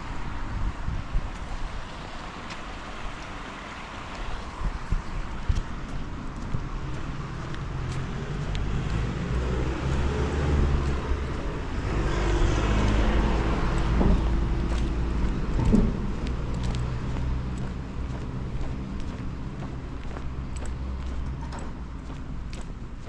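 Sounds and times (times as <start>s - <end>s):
vehicle rumble: 0.0s - 23.0s.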